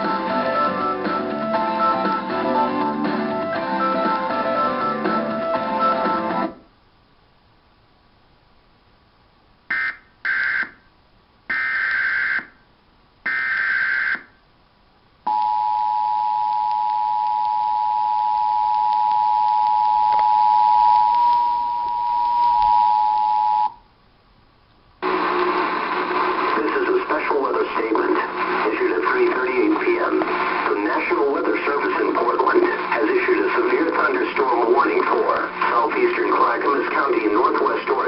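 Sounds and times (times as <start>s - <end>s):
two-tone attention signal: 15.3s - 23.8s.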